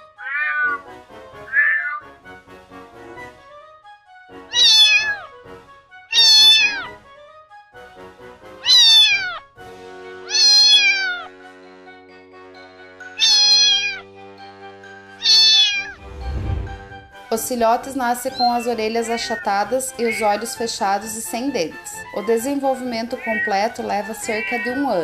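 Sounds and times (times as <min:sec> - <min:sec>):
cat meowing: 0:00.0 - 0:00.8, 0:01.5 - 0:02.0, 0:04.5 - 0:05.3, 0:06.1 - 0:07.0, 0:08.6 - 0:09.4, 0:10.3 - 0:11.3, 0:13.1 - 0:14.0, 0:15.2 - 0:16.0, 0:18.4 - 0:20.6, 0:22.9 - 0:25.0
soft background music: 0:00.0 - 0:25.0.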